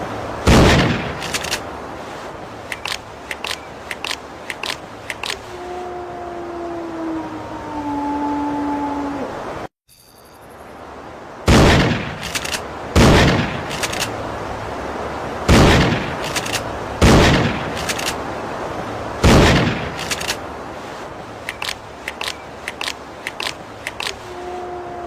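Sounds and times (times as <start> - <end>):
small clicks: 1.2 - 1.6, 2.6 - 5.5, 13.7 - 14.1, 16.2 - 16.7, 19.9 - 20.4, 21.4 - 24.3.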